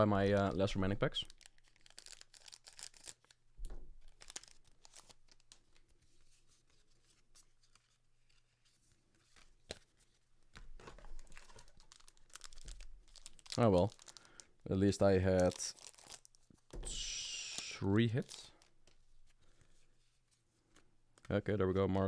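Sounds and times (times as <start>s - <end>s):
foil wrapper crinkling: 0.2s - 3.4s, 4.0s - 5.8s, 10.8s - 19.0s.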